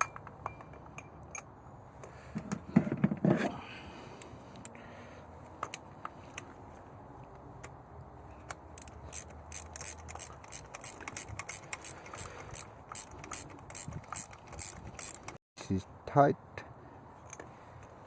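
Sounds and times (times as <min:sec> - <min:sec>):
ratchet wrench clicking: 0:08.5 - 0:15.4.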